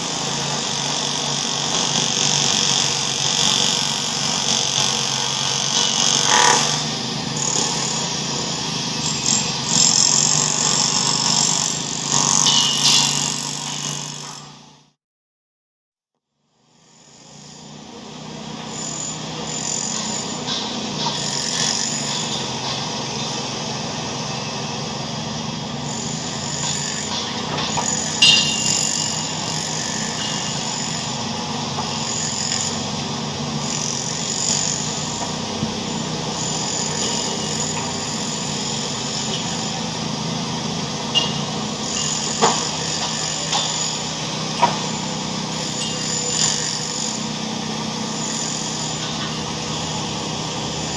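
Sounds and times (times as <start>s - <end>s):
sharp knocks and clatters: 26.5s - 30.7s, 42.0s - 43.9s.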